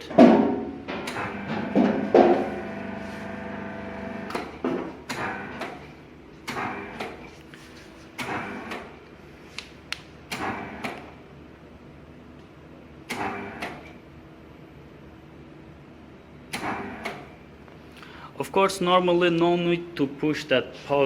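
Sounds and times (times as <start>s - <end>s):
metal knocks and clunks: 0.0s - 2.4s
steady machine hum: 0.0s - 20.3s.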